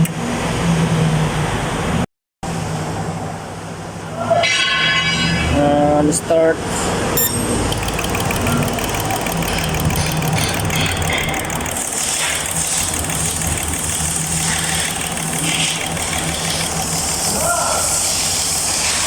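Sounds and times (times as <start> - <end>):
machine humming: 7.2 - 19.0
rapid regular clicking: 7.7 - 18.9.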